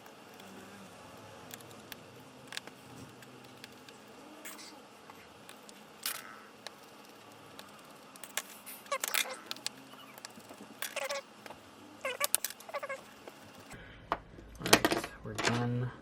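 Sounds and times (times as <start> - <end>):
screwdriver clicks and squeaks: 8.2 - 11.2, 12.0 - 13.1.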